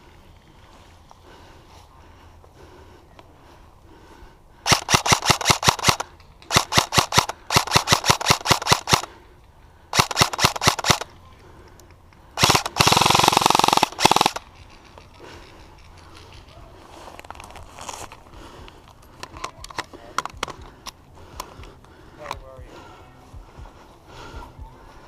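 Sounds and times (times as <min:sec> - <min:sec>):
airsoft rifle firing full auto: 0:04.7 - 0:09.1, 0:09.9 - 0:11.1, 0:12.4 - 0:14.4.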